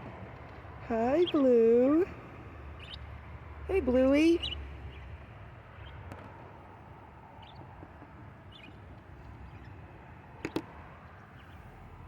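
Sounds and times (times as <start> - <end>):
budgerigars chirping: 2.8 - 3.1, 4.3 - 5.1, 8.5 - 8.7.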